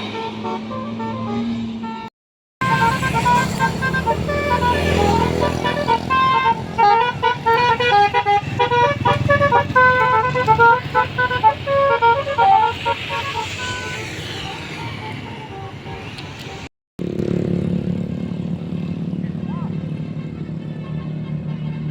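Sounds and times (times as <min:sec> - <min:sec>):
musical air horn tune: 0:00.0 - 0:16.7
vehicle noise: 0:00.0 - 0:21.9.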